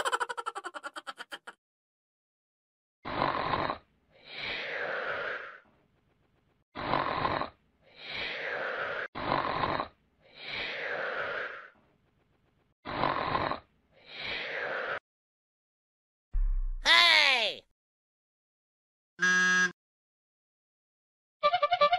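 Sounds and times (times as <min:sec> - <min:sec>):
comic snoring: 0:03.0 - 0:05.6, 0:06.8 - 0:11.8, 0:12.8 - 0:14.8.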